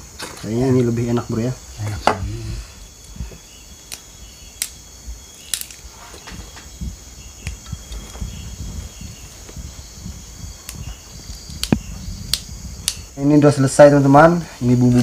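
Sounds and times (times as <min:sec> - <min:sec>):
crickets and insects chirring: 0:00.0 - 0:15.0
sharp clicks: 0:03.9 - 0:04.8, 0:05.4 - 0:05.8, 0:11.5 - 0:13.1.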